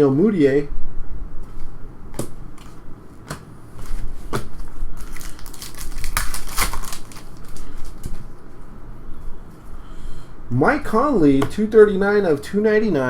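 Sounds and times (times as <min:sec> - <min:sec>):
cards crinkling and crackling: 0:03.8 - 0:08.2.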